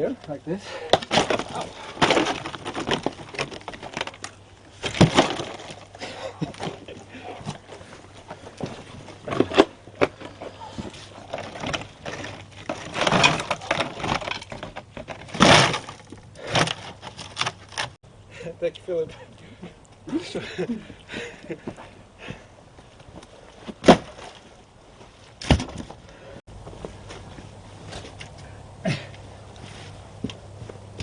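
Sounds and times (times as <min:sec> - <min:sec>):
wood cracking and crunching: 0:00.2 - 0:18.0, 0:23.0 - 0:26.3.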